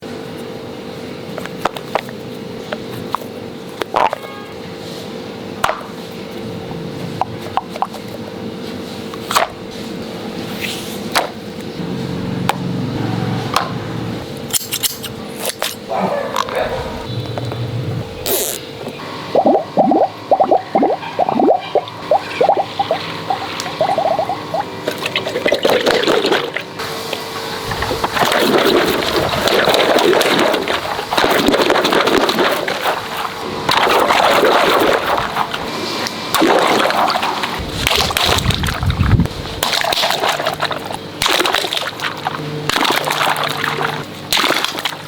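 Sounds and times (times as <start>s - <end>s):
water sloshing and splashing: 19.3s - 26.8s, 27.6s - 35.7s, 36.3s - 45.0s.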